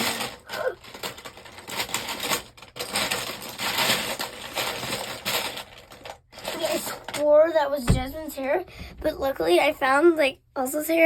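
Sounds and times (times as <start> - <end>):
plastic lego pieces clattering: 0.0 - 7.5.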